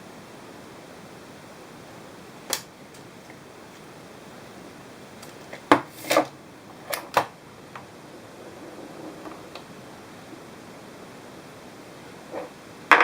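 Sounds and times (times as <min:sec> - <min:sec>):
steady hiss: 0:00.0 - 0:13.0
sharp click: 0:02.5 - 0:03.1.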